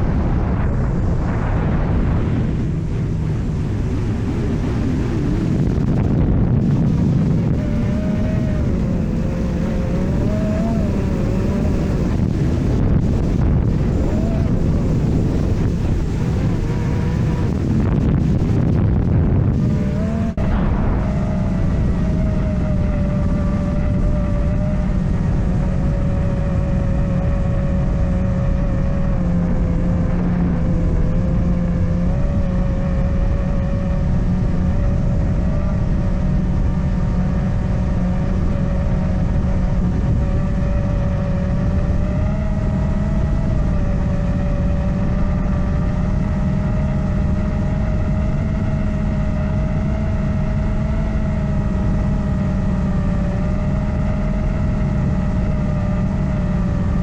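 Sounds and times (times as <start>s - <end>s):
heavy low rumble: 0.0s - 57.0s
drone motors whining: 3.8s - 27.3s.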